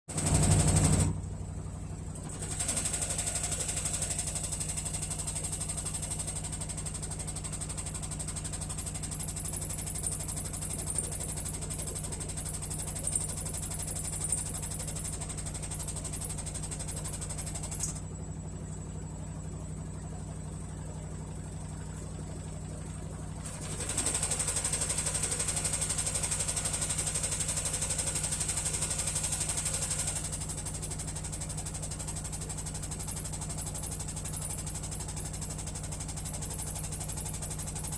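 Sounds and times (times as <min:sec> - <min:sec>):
motor hum: 0:00.1 - 0:37.9.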